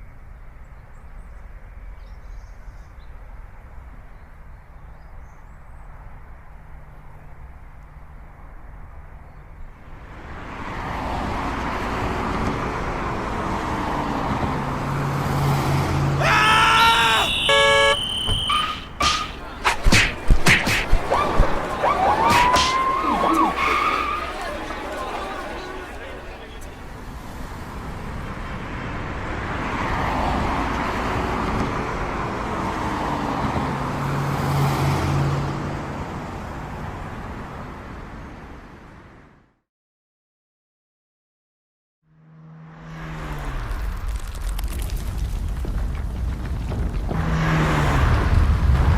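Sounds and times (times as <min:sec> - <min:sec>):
road vehicle noise: 0:00.1 - 0:39.4, 0:42.2 - 0:48.9
car horn honk: 0:16.2 - 0:20.3.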